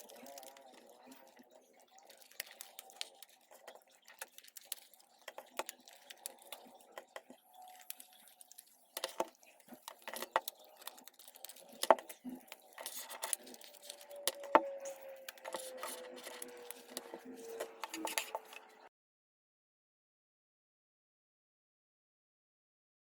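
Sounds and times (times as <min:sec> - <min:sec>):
small hard parts clicking: 0:00.0 - 0:18.7.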